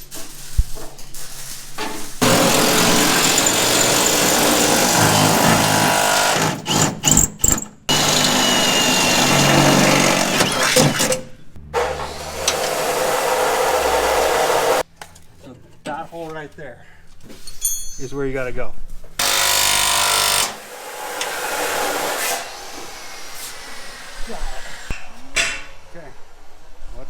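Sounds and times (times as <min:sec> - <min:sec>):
power tool running: 0:02.2 - 0:07.0, 0:07.9 - 0:11.1, 0:11.7 - 0:14.8, 0:19.2 - 0:24.9
low steady hum: 0:11.4 - 0:12.8.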